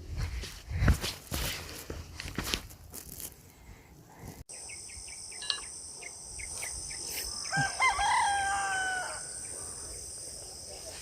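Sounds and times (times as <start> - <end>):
bird chirps: 4.5 - 7.7
rooster crowing: 7.4 - 9.5.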